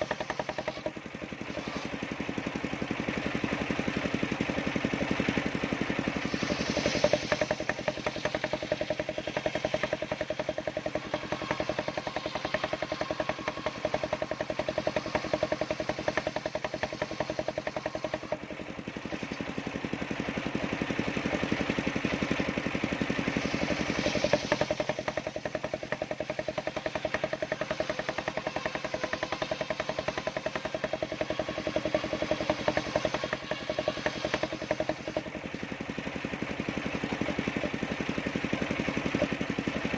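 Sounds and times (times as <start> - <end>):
circular sawmill blade running: 0.0 - 39.9
pulsing engine: 0.0 - 39.9.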